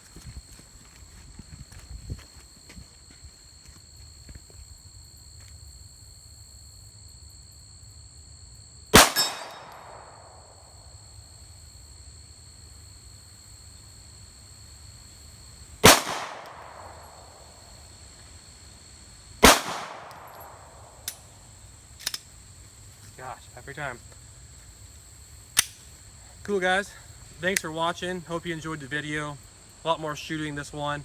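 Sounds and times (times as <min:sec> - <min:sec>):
pistol shots: 0:09.0 - 0:10.3, 0:15.8 - 0:17.4, 0:19.4 - 0:21.2.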